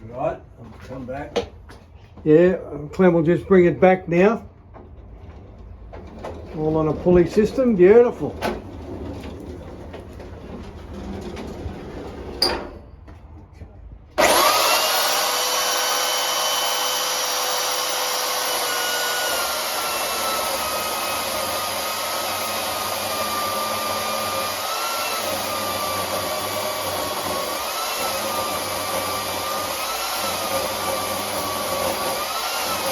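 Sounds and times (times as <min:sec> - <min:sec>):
chainsaw cutting log: 0:14.2 - 0:32.9.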